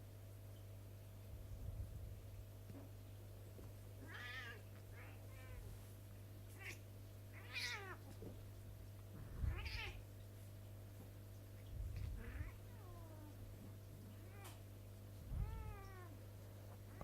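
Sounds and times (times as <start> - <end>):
cats meowing and yowling: 6.6 - 8.0, 9.4 - 10.0, 15.3 - 16.2.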